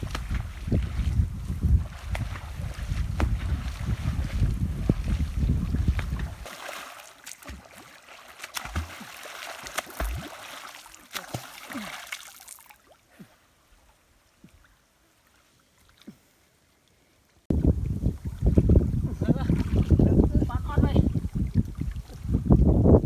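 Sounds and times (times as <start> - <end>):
wind rumble on microphone: 0.0 - 6.5, 17.5 - 23.0
water trickling and bubbling: 17.5 - 23.0.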